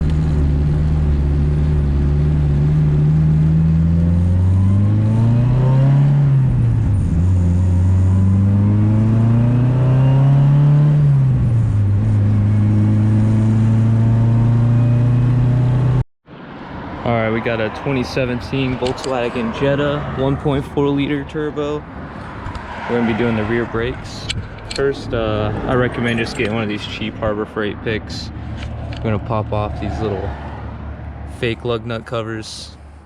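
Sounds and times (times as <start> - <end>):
car engine accelerating: 0.0 - 16.0.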